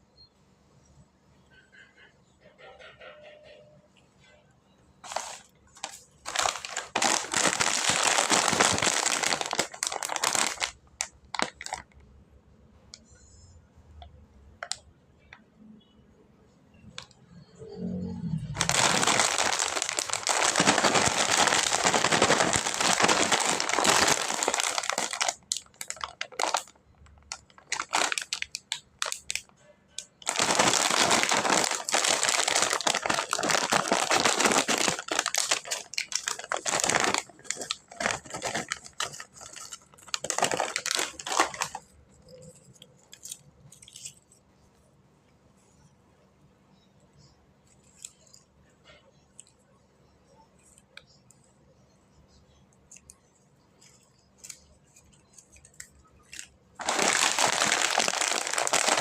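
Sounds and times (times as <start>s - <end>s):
plastic packaging crinkling: 5.0s - 12.0s, 18.4s - 44.4s, 53.8s - 59.0s.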